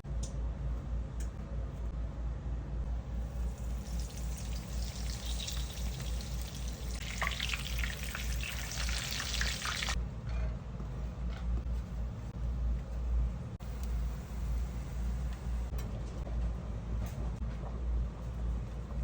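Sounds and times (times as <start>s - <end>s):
low hum: 0.0s - 19.0s
food sizzling in a pan: 3.4s - 10.0s.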